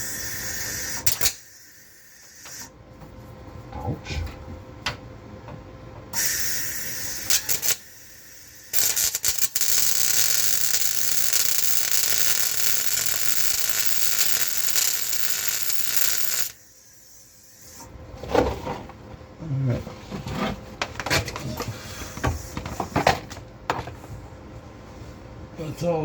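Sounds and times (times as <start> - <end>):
welding arc crackling: 0.0 - 1.6, 6.2 - 17.7.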